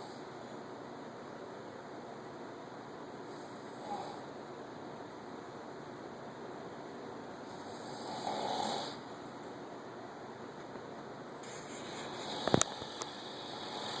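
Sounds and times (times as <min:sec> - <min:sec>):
man snoring: 0:07.5 - 0:09.0, 0:12.1 - 0:14.0.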